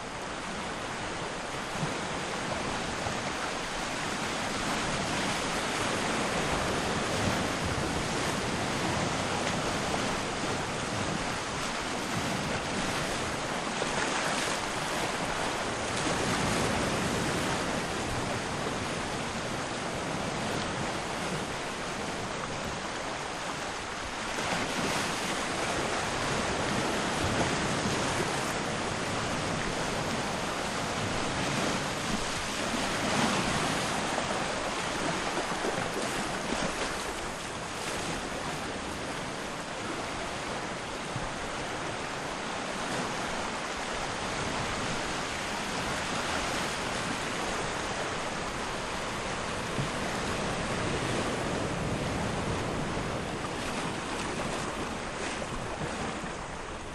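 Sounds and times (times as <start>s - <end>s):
sea waves washing in: 0.0s - 56.9s.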